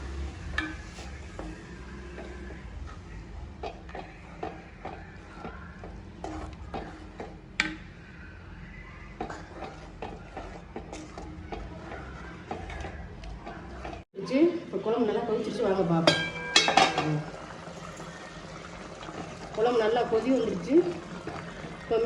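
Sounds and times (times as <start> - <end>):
spoon stirring and scraping pot: 0.0 - 14.1
spoon clinking against pot: 0.5 - 1.5, 16.0 - 17.2.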